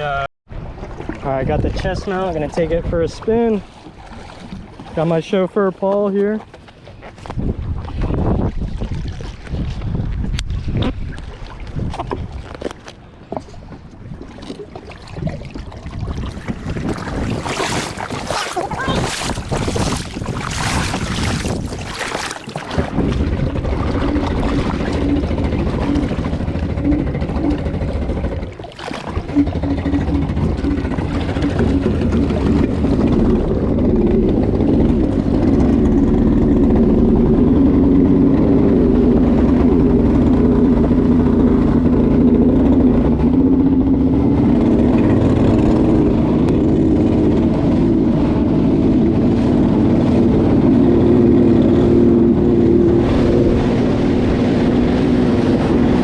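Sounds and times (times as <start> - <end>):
wind: 0.0 - 56.0
water noise: 0.5 - 40.9, 44.7 - 56.0
jet ski engine running: 15.9 - 56.0.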